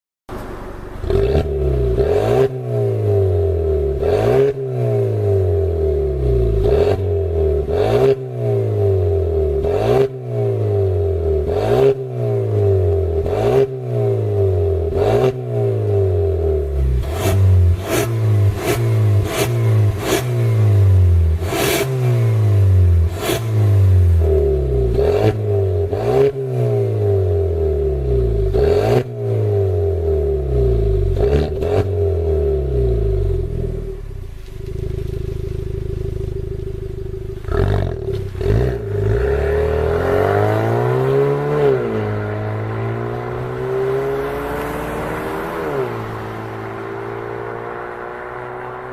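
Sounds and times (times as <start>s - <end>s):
car engine revving: 0.3s - 48.9s
exhaust pops and crackles: 33.3s - 39.1s.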